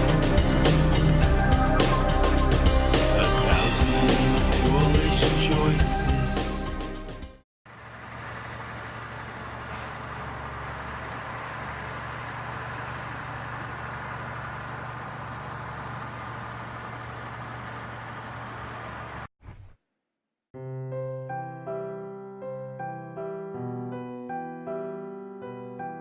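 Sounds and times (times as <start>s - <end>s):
music: 0.0s - 7.4s, 20.6s - 26.0s.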